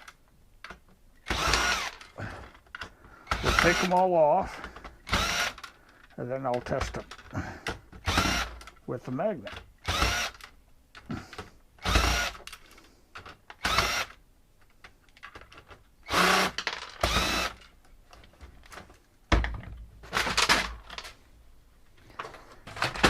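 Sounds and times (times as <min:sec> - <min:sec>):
cordless drill running: 0:01.2 - 0:02.0, 0:03.2 - 0:04.0, 0:05.0 - 0:05.7, 0:08.0 - 0:08.5, 0:09.8 - 0:10.4, 0:11.8 - 0:12.4, 0:13.6 - 0:14.2, 0:16.0 - 0:17.6.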